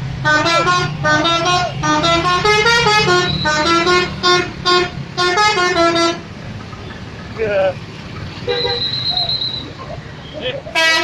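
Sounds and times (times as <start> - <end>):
bus engine rumbling: 0.0 - 11.0
bus musical horn playing tune: 0.2 - 6.2, 10.7 - 11.0.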